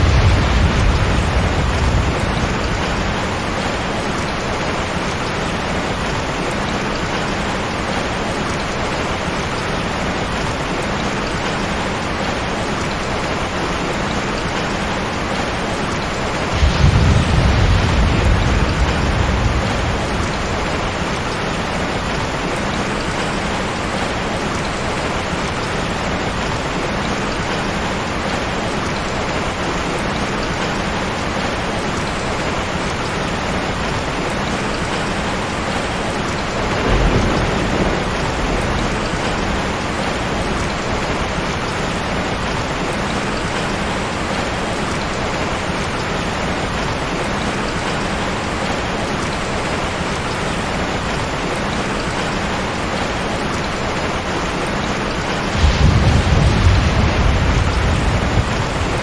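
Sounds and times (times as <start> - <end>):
thunder rumbling: 0.0 - 7.2, 15.1 - 23.2, 36.4 - 42.5, 55.0 - 59.0
heavy rain falling: 0.0 - 59.0.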